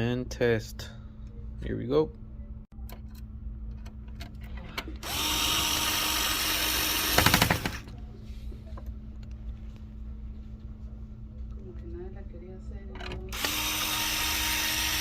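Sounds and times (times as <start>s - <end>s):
electric screwdriver driving screw: 5.0s - 7.9s, 13.3s - 15.0s.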